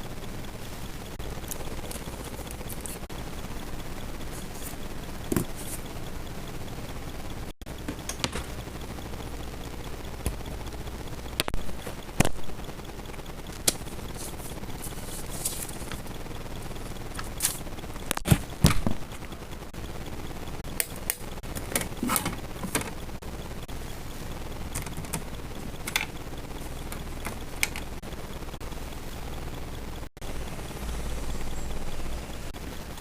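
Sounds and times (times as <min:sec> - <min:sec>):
rustling: 0:13.8 - 0:17.7.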